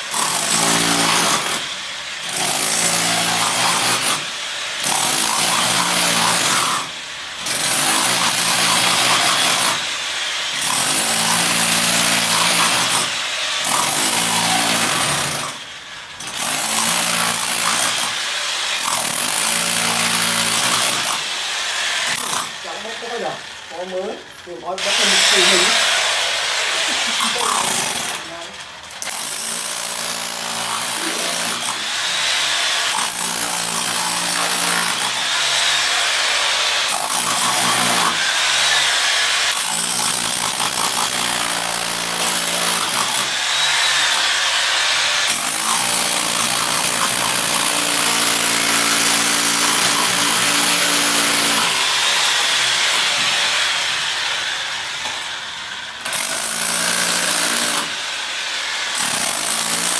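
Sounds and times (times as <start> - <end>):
electric power tool running: 24.7 - 59.9.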